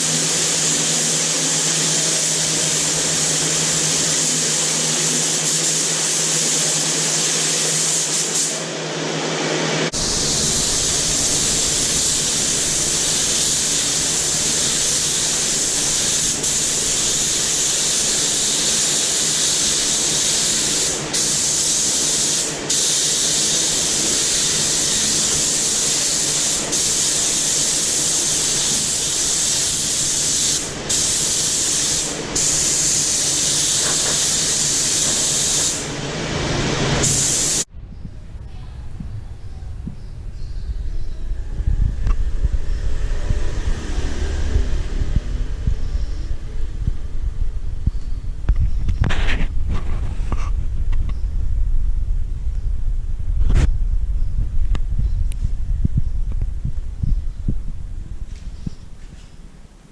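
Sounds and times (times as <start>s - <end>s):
compressed-air tool hissing: 0.0s - 8.7s, 9.9s - 36.1s, 36.9s - 37.7s.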